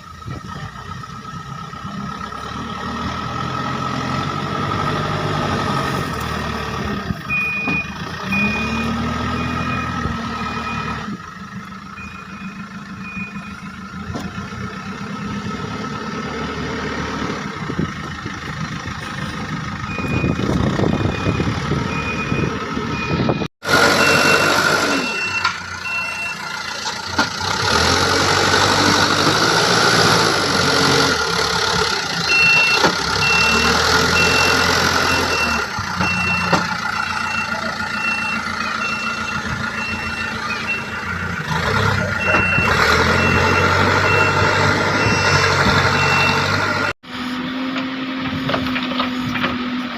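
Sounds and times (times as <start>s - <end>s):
diesel engines running: 0.0s - 49.9s
reversing alarm beeping: 7.3s - 11.2s, 11.9s - 13.9s, 19.9s - 26.6s, 32.2s - 41.3s, 42.0s - 47.0s.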